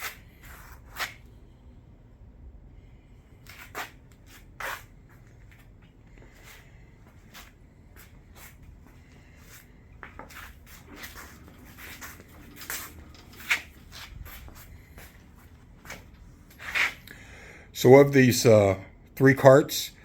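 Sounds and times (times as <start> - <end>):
light clicks and knocks of handling: 10.0 - 16.6.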